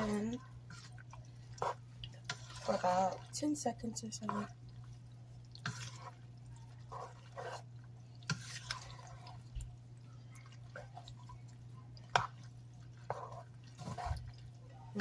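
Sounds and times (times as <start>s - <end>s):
wet squelching and dripping: 4.4s - 15.0s.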